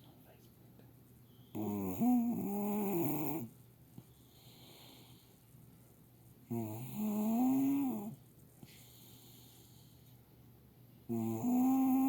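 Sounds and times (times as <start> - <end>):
loud snoring: 1.6 - 3.5, 6.5 - 8.1, 11.1 - 12.0.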